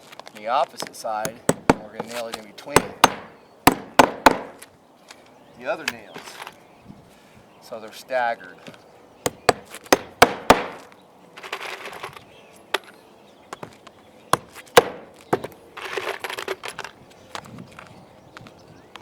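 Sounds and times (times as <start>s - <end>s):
hammer striking nails: 1.2s - 4.6s, 9.3s - 10.9s, 14.3s - 15.6s.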